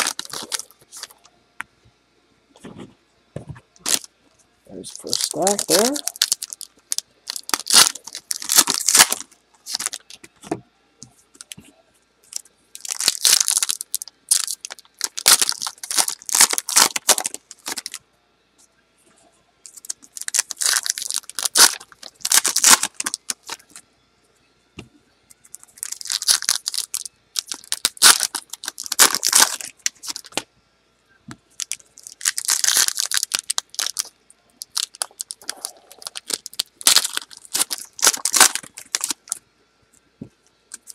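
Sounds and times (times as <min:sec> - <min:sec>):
foil wrappers tearing and crinkling: 0:00.0 - 0:01.2, 0:03.8 - 0:04.1, 0:04.8 - 0:10.1, 0:12.8 - 0:18.0, 0:19.7 - 0:23.8, 0:25.5 - 0:30.4, 0:31.6 - 0:39.4.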